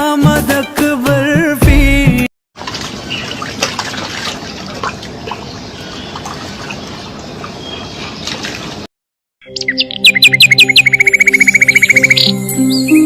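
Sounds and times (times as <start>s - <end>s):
small water drips: 2.6s - 8.8s
water trickling and splashing: 2.6s - 8.9s.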